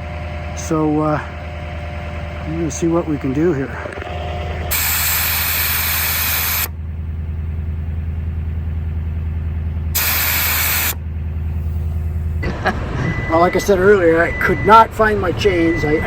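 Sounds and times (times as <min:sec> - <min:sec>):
engine hum: 0:00.0 - 0:16.0
air hissing from tyre valve: 0:04.7 - 0:06.7, 0:09.9 - 0:11.0.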